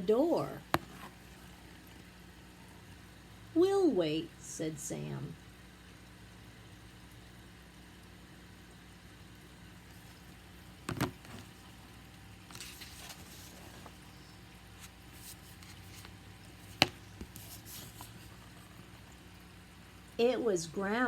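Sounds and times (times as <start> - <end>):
room hum: 0.0 - 21.0
soft rustling: 0.6 - 1.6, 9.9 - 19.0.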